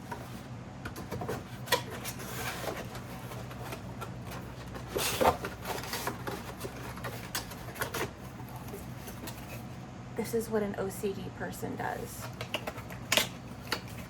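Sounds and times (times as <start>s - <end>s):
steady low hum: 0.0s - 14.0s
packaging rustling: 1.0s - 9.7s.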